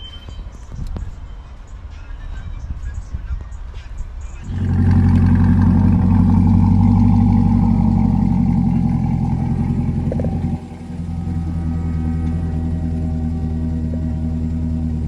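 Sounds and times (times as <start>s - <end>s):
car engine through loud exhaust: 4.4s - 15.0s.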